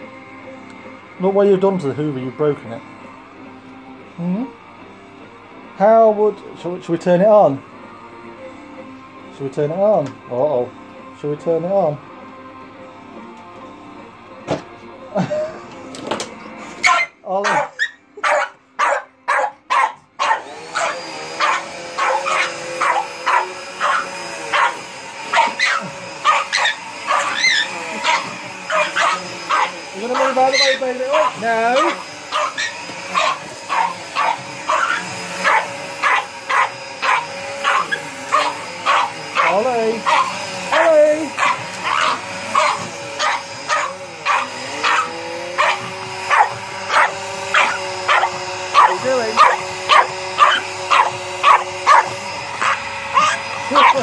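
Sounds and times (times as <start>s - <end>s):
vacuum cleaner whine: 0.0s - 54.0s
dog barking: 16.8s - 54.0s.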